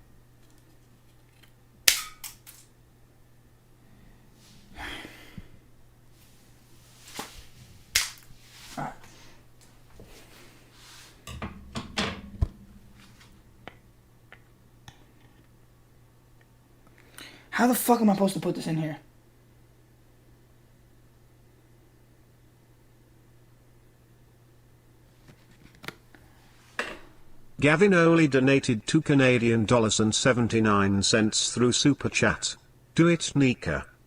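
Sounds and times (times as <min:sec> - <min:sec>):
handling noise: 0:09.6 - 0:14.6.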